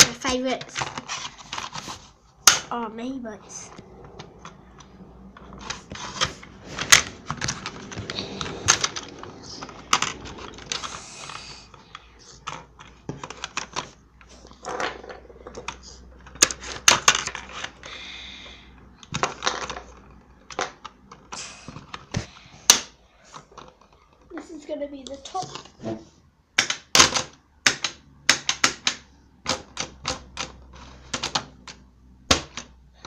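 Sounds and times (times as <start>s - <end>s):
plastic objects clicking on table: 26.6s - 32.7s.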